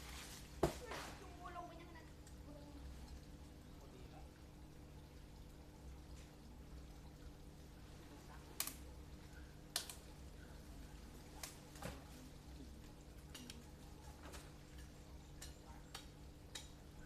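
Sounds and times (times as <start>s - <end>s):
tree branches snapping when cut: 9.7s - 10.0s.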